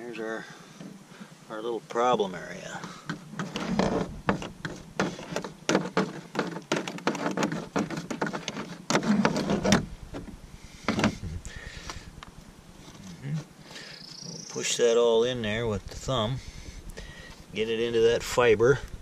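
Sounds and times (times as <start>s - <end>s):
heavier thuds: 3.0s - 6.0s, 9.4s - 12.4s.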